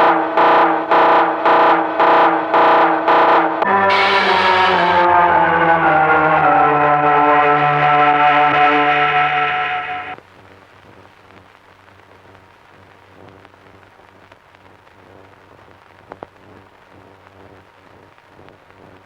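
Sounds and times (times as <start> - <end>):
faint crackling hiss: 10.2 - 19.0.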